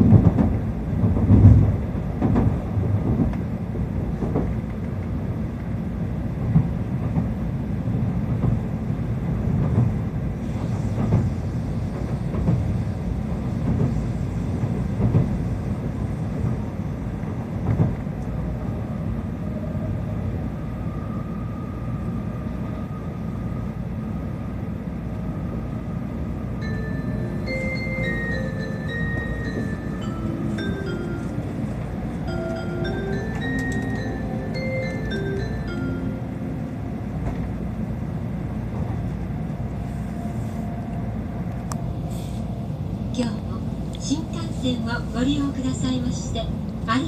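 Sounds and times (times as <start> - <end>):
train rumble: 0.0 - 47.0
chime melody: 26.6 - 36.8.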